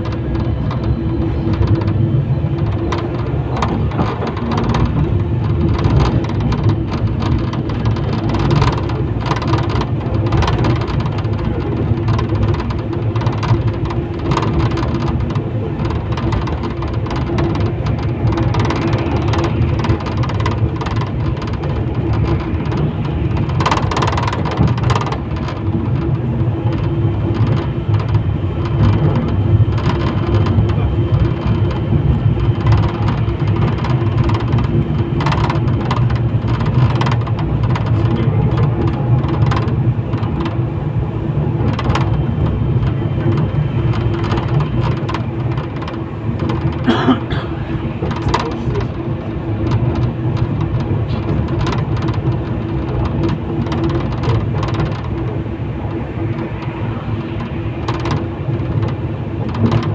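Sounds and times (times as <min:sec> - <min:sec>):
tram wheels rumbling on rail: 0:00.0 - 0:59.9
knocks and rattles: 0:02.6 - 0:40.6, 0:49.6 - 0:55.2.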